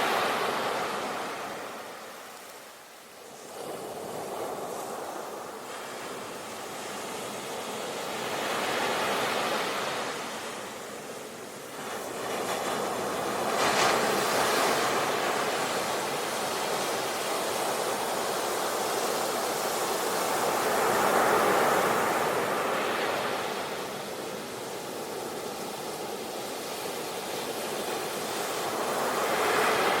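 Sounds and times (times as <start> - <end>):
ocean waves washing ashore: 0.0 - 30.0.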